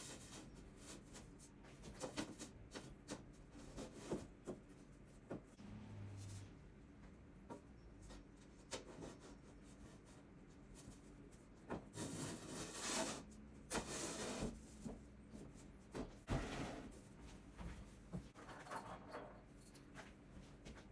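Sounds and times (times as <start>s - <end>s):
workbench parts rubbing and scraping: 11.9s - 17.0s.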